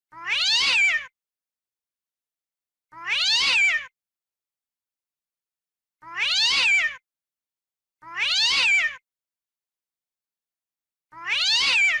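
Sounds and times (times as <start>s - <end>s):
cat yowling: 0.1s - 1.1s, 2.9s - 3.9s, 6.0s - 7.0s, 8.0s - 9.0s, 11.1s - 12.0s.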